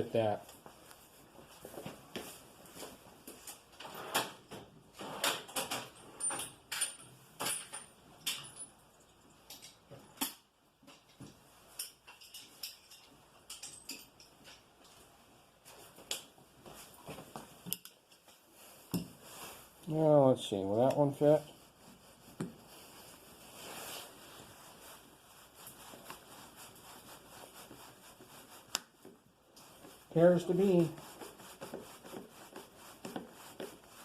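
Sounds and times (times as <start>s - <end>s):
small metal tools clinking: 5.7s - 9.8s, 11.8s - 14.7s.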